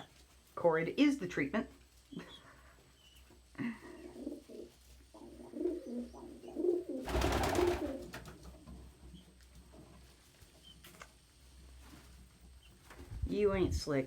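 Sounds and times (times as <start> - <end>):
pigeons cooing: 3.8 - 8.1.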